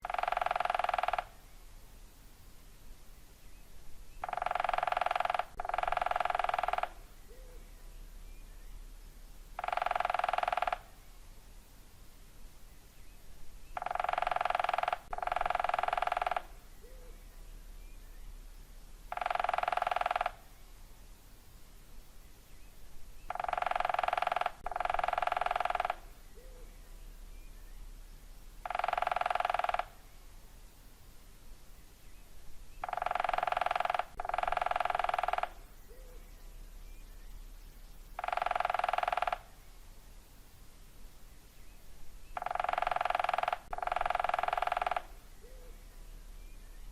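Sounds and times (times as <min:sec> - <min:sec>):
woodpecker drumming on wood: 0:00.0 - 0:01.4, 0:04.2 - 0:07.0, 0:09.6 - 0:11.0, 0:13.8 - 0:16.6, 0:19.1 - 0:20.4, 0:23.3 - 0:26.2, 0:28.6 - 0:30.0, 0:32.8 - 0:35.7, 0:38.2 - 0:39.6, 0:42.4 - 0:45.2.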